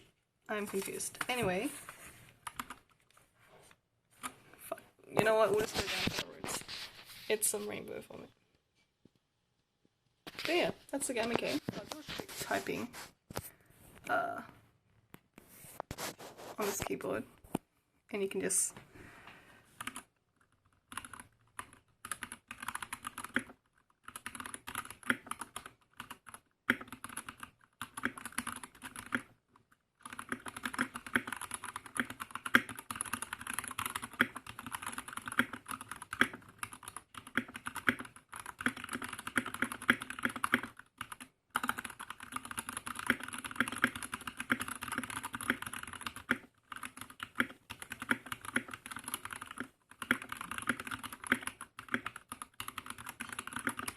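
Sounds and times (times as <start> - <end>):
typing on mechanical keyboard: 2.4 - 3.0, 19.8 - 29.4, 30.0 - 53.9.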